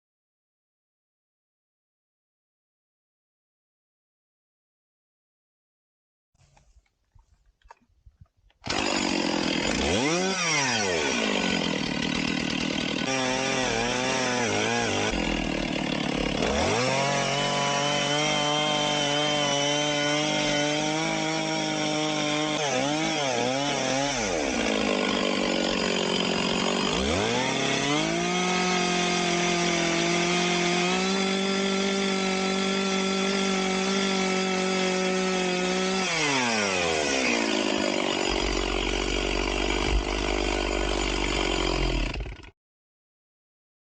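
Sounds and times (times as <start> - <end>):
chainsaw revving and idling: 8.6 - 42.6.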